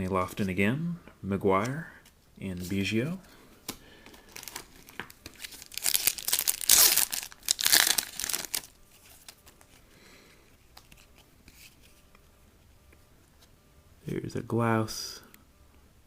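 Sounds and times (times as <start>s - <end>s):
wrapper tearing and crinkling: 4.3s - 9.7s.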